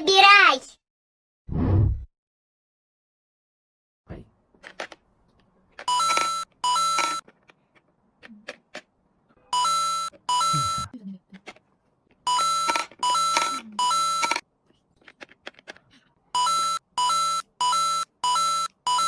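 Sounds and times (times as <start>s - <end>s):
electronic alarm beeping: 9.5s - 10.9s, 12.3s - 14.4s, 16.4s - 19.0s.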